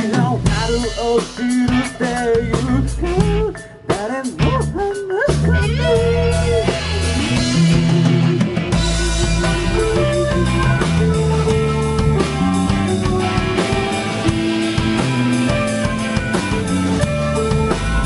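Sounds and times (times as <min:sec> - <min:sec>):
bass: 0:00.0 - 0:18.0
drum kit: 0:00.0 - 0:18.0
guitar lines: 0:00.0 - 0:18.0.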